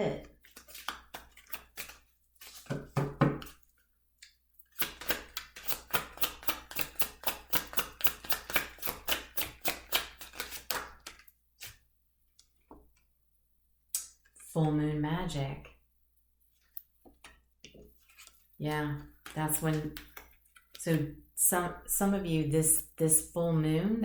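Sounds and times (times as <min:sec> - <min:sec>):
cards being shuffled by hand: 0:00.3 - 0:03.6, 0:04.7 - 0:11.8, 0:18.0 - 0:18.5.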